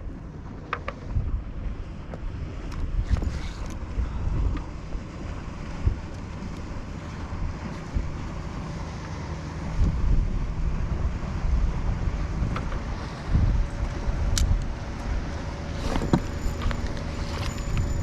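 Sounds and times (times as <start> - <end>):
water lapping against kayak: 0.0 - 18.0
wind buffeting microphone: 0.0 - 18.0.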